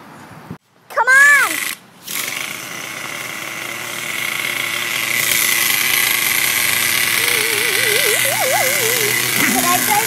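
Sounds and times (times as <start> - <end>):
toy car electric motor whirring: 1.4 - 10.0
wavering tone: 7.2 - 10.0.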